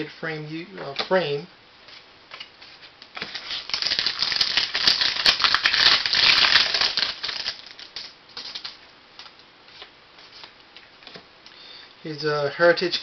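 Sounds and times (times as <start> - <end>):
trading card wrapper crinkling: 3.2 - 8.8.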